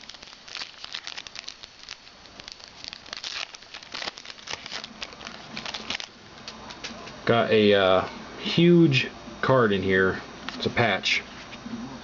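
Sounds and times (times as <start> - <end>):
foil wrapper crinkling and tearing: 0.0 - 7.0.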